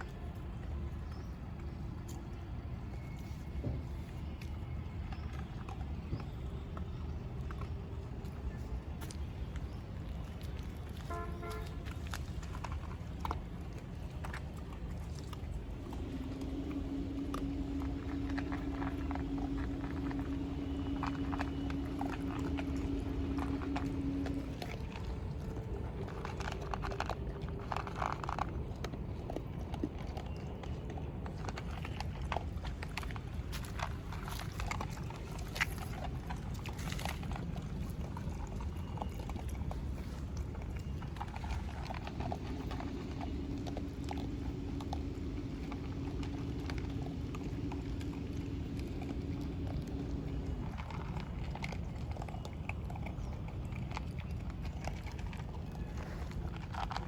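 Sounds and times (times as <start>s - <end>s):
dogs eating with crunches: 0.0s - 57.0s
steady low rumble: 0.0s - 57.0s
steady hum: 11.1s - 29.4s, 31.0s - 57.0s.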